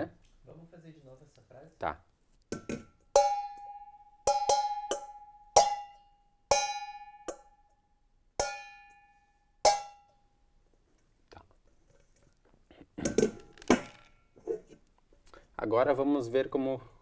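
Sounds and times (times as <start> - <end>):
metal pot struck rhythmically: 2.5 - 7.8, 8.4 - 10.2.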